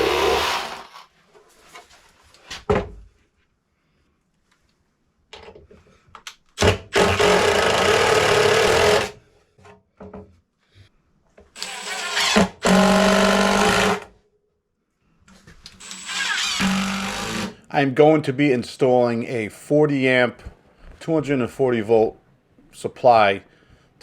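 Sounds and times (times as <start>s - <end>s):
power tool motor running: 15.8s - 17.5s.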